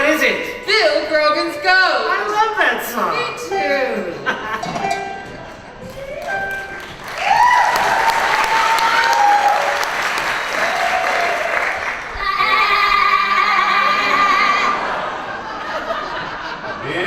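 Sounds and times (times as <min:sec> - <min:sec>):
audience applauding and cheering: 0:05.7 - 0:14.8
rising whoop: 0:07.1 - 0:09.9, 0:10.5 - 0:14.7.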